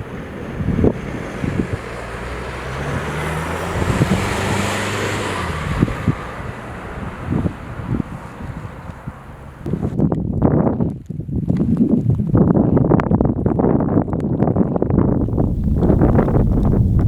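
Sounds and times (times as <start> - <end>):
vehicle passing on road: 0.0 - 10.0, 15.0 - 17.0
wind buffeting microphone: 0.0 - 17.0.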